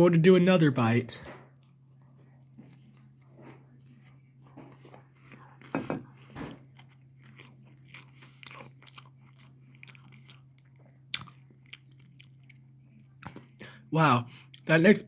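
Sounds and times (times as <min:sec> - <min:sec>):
mouth chewing clicks and crunches: 0:03.9 - 0:13.7.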